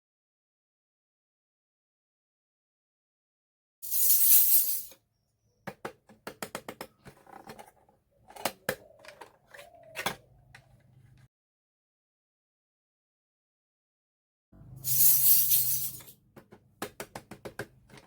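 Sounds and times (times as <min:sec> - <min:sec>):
plastic squeaks: 0:06.9 - 0:11.0.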